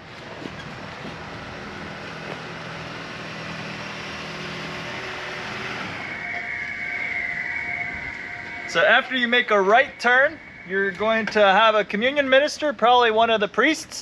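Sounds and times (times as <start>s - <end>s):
car engine running: 0.0s - 6.5s.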